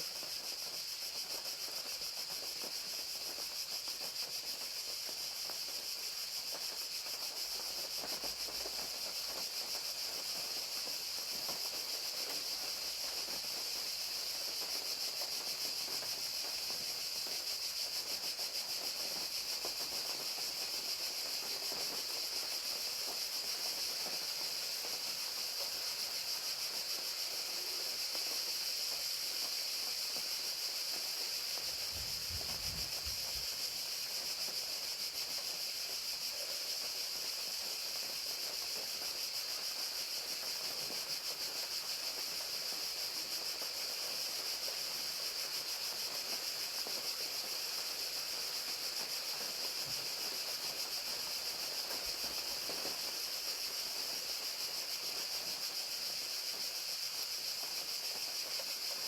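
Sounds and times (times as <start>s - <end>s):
crickets trilling: 0.0s - 59.0s
rain hissing: 30.8s - 34.6s.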